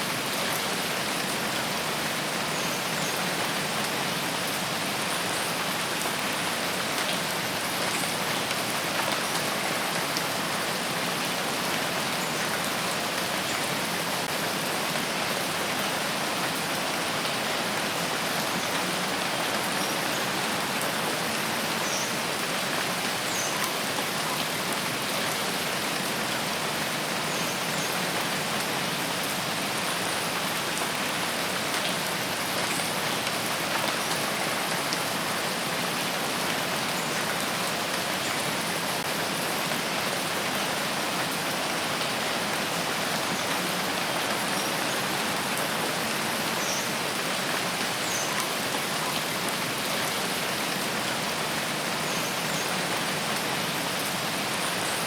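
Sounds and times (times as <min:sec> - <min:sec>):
rain falling in forest: 0:00.0 - 0:55.0.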